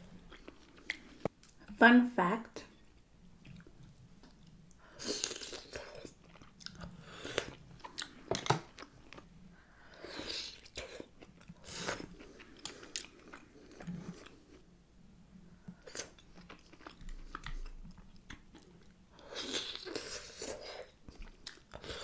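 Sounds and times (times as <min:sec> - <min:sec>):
person biting and chewing seafood: 0:05.0 - 0:09.3, 0:15.8 - 0:22.0.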